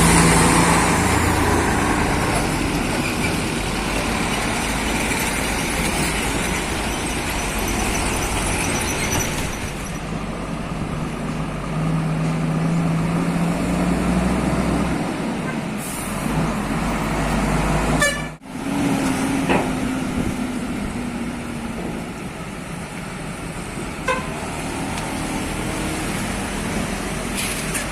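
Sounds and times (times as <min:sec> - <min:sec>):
traffic rumble: 0:00.0 - 0:27.9.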